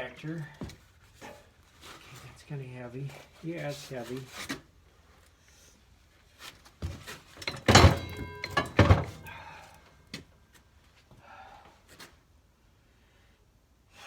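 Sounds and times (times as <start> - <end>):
heavy metal clunks and thuds: 6.9 - 9.6
man's strained breathing: 9.2 - 9.9.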